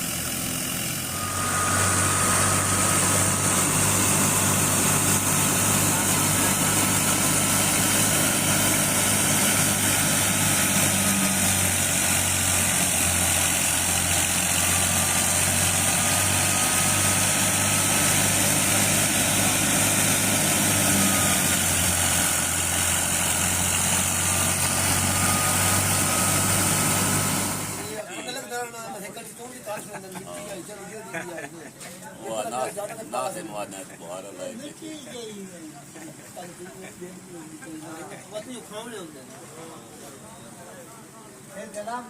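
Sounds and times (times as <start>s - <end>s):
farm machinery engine droning: 0.0s - 28.0s
thin high whine: 0.9s - 28.0s.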